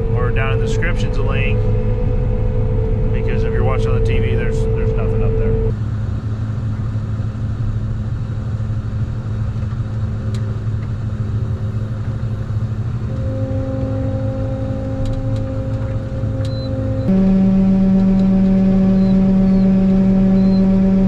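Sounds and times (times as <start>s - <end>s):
farm machine engine running: 0.0s - 5.7s
strong steady hum: 0.0s - 21.0s.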